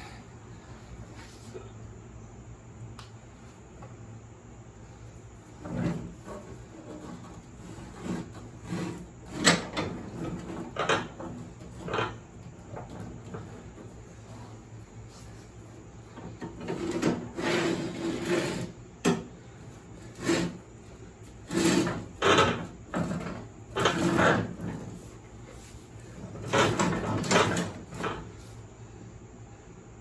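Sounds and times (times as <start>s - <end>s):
metal deck scraping and sliding: 5.3s - 28.6s.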